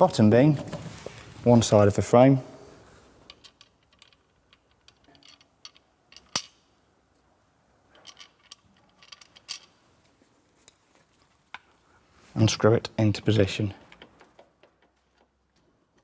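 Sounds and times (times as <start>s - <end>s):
metal clinks and knocks: 3.2s - 6.8s, 7.9s - 9.9s.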